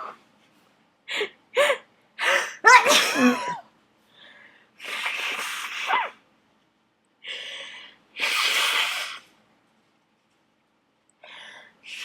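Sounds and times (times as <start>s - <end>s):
person sneezing: 2.2s - 3.6s.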